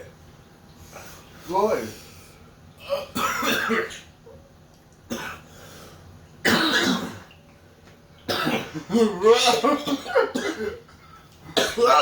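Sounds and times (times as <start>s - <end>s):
man coughing hard: 2.9s - 4.0s, 5.1s - 5.4s, 6.4s - 7.3s, 8.3s - 10.9s, 11.6s - 12.0s.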